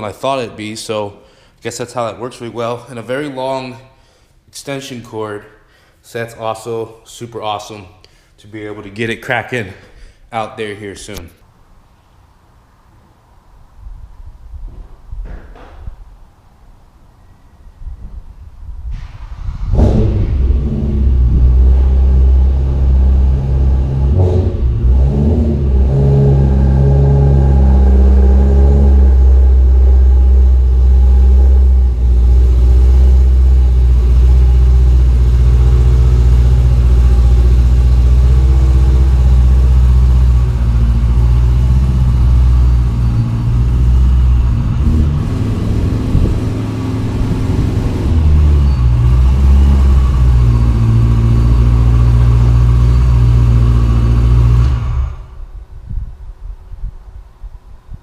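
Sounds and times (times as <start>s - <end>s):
car engine running and idling: 19.7s - 55.4s.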